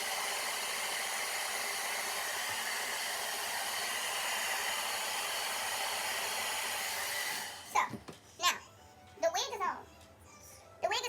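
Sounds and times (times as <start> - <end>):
blow dryer running: 0.0 - 8.0.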